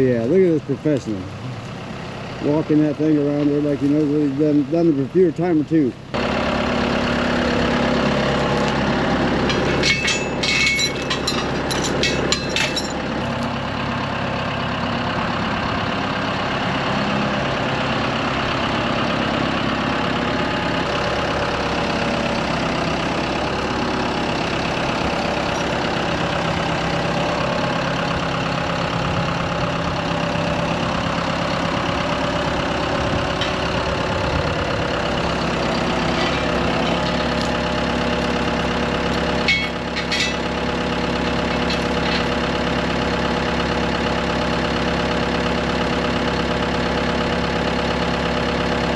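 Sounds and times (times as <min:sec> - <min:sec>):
forklift engine running: 0:00.0 - 0:48.9
metal clanks and rattles: 0:09.3 - 0:13.4, 0:24.7 - 0:28.0, 0:33.2 - 0:38.2, 0:39.1 - 0:42.7.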